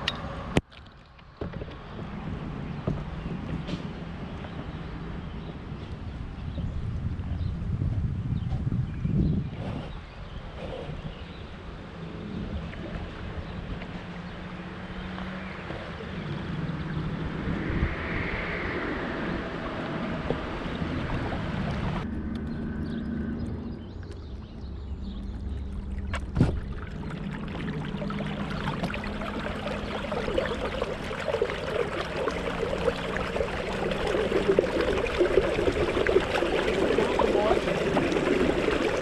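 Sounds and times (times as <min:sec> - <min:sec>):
river water gurgling and splashing: 0:09.6 - 0:39.0.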